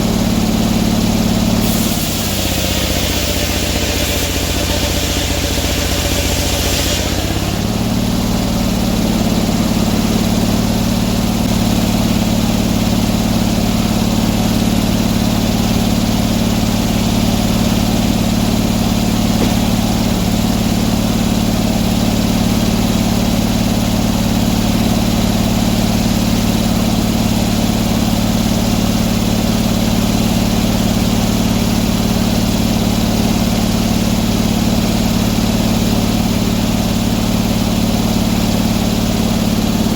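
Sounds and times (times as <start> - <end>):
sawmill engine running: 0.0 - 39.9
hiss: 1.6 - 7.2.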